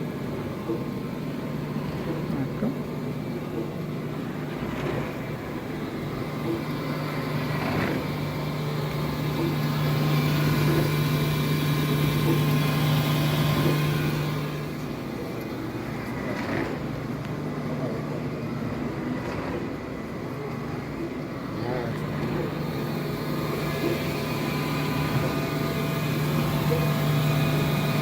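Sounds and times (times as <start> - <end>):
grinder motor hum: 1.9 - 17.2, 21.4 - 28.0.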